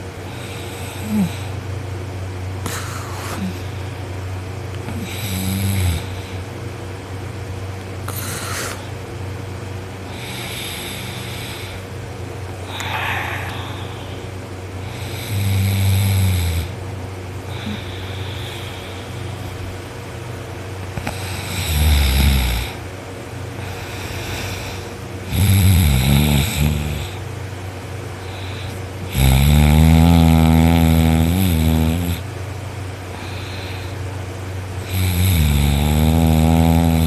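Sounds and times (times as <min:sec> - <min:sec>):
man snoring loudly: 0:00.3 - 0:01.5, 0:04.9 - 0:06.3, 0:10.1 - 0:11.8, 0:14.8 - 0:16.8, 0:21.0 - 0:22.8, 0:24.7 - 0:27.2, 0:28.3 - 0:32.3, 0:34.8 - 0:37.0.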